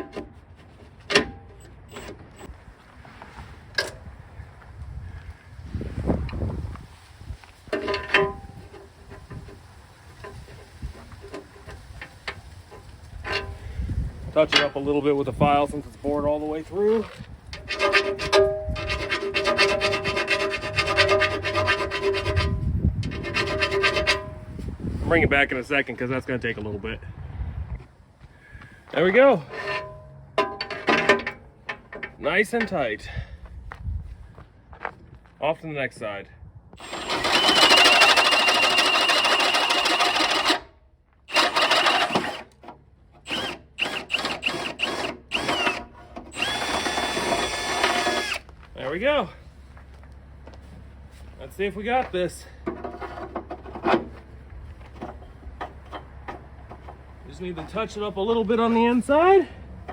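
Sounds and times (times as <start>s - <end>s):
hand file rasping on metal: 17.6s - 24.4s
electric drill whining: 36.8s - 40.7s, 41.3s - 42.5s, 43.2s - 48.5s.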